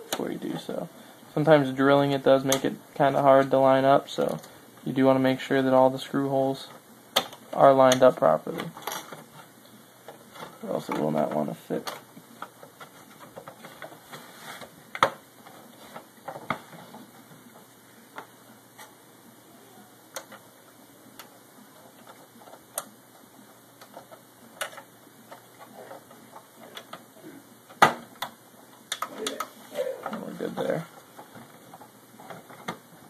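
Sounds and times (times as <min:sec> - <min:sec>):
plastic parts clicking and tapping: 0:06.7 - 0:14.0, 0:14.9 - 0:18.9, 0:20.1 - 0:20.5, 0:21.2 - 0:27.1, 0:27.7 - 0:33.0.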